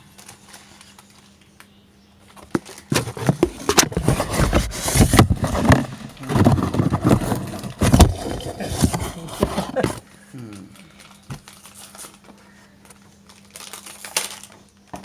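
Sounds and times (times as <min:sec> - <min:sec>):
snack packet rustling and tearing: 0:13.2 - 0:14.7.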